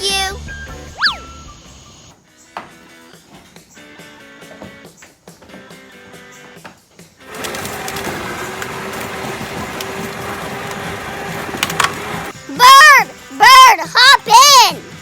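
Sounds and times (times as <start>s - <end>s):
quiet background music: 0.0s - 15.0s.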